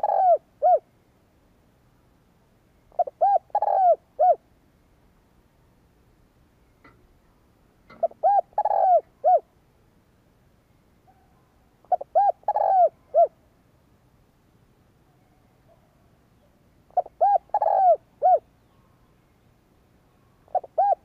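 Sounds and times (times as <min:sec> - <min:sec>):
dove cooing: 0:00.0 - 0:00.9, 0:02.9 - 0:04.4, 0:07.9 - 0:09.5, 0:11.1 - 0:13.4, 0:16.9 - 0:18.8, 0:20.5 - 0:21.0.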